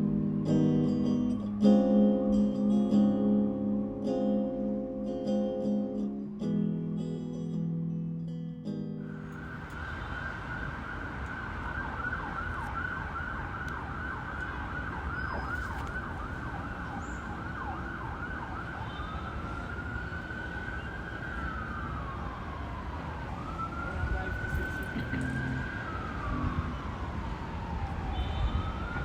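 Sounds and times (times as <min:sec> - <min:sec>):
emergency vehicle siren: 0:09.1 - 0:29.0.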